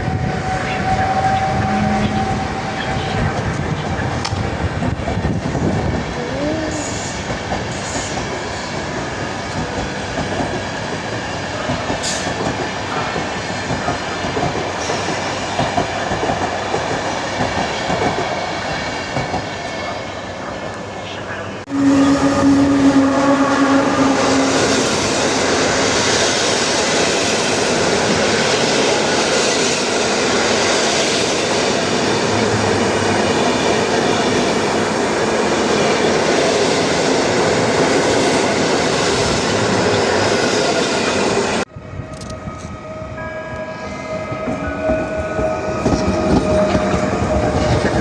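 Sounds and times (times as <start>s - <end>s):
train horn: 0.0s - 3.4s, 21.7s - 26.6s, 42.2s - 48.0s
train wheels clattering on rails: 3.4s - 19.8s, 44.3s - 48.0s.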